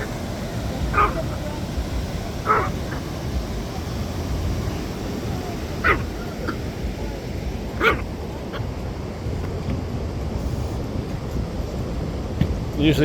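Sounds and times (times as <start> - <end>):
low beach rumble: 0.0 - 13.0
dog barking: 0.8 - 1.4, 2.4 - 3.1, 5.8 - 6.7, 7.7 - 8.7
dog yip: 0.9 - 1.3, 2.4 - 3.0, 5.8 - 6.6, 7.8 - 8.1.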